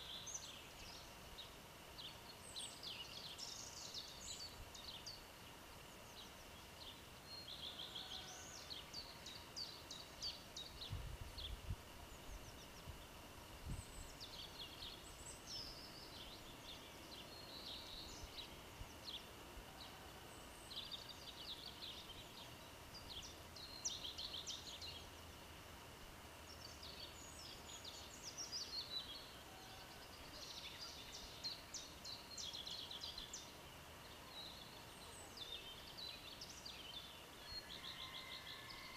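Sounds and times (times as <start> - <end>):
open air background hiss: 0.0 - 38.9
songbirds chirping and trilling: 0.0 - 38.9.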